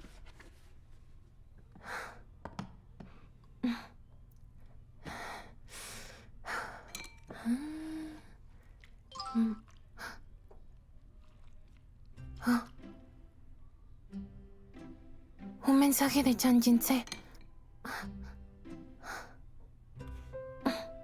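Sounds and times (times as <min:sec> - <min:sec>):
person breathing and sighing: 0:05.0 - 0:08.4.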